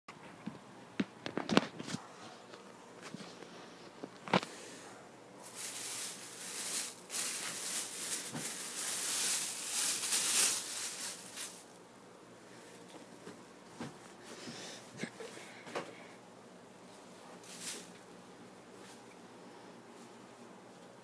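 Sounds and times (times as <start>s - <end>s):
packaging rustling and crinkling: 5.4s - 11.7s.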